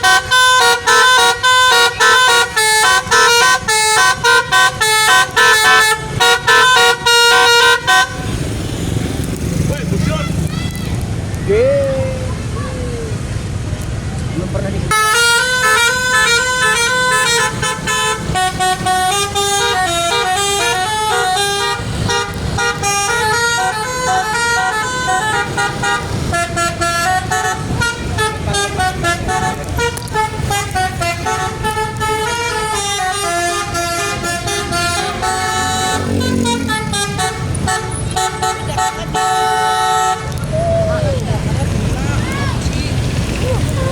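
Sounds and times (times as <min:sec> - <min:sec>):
musical bus horn playing tune: 0:00.0 - 0:09.0, 0:14.9 - 0:40.4.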